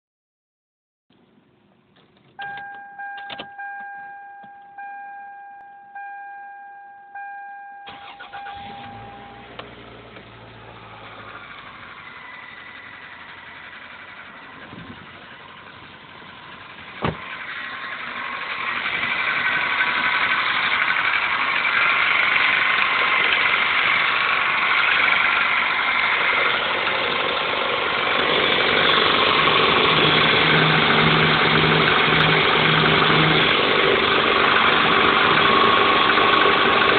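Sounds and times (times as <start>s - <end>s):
dashboard chime: 2.4s - 9.6s
car engine idling with rattle: 7.9s - 36.9s.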